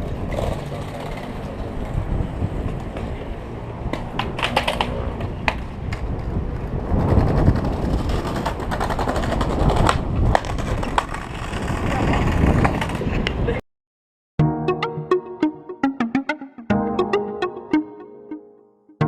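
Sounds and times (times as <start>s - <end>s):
skateboard clacks: 0.0s - 2.0s, 3.9s - 13.4s
skateboard rolling on pavement: 0.0s - 13.5s
wind buffeting microphone: 1.7s - 3.0s, 5.2s - 13.6s.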